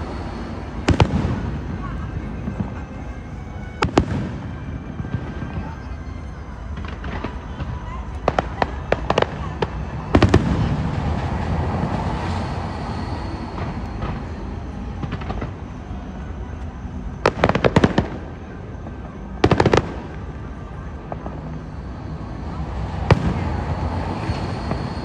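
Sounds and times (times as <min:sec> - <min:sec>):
loud crackling bangs: 0:00.0 - 0:02.7, 0:22.5 - 0:25.0.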